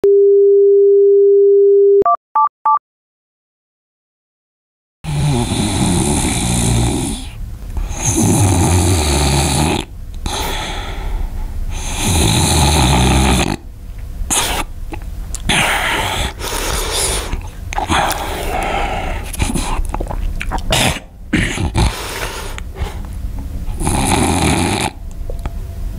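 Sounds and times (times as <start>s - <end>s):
person snoring loudly: 5.0s - 11.1s, 11.7s - 13.6s, 15.5s - 19.7s, 20.7s - 22.6s, 23.7s - 25.0s
quiet breaths: 10.2s - 12.0s, 15.6s - 19.8s.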